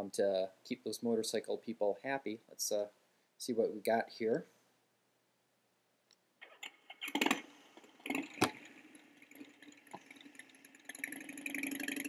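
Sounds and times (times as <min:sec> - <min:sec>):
motorcycle engine sound effect: 0:07.0 - 0:12.0.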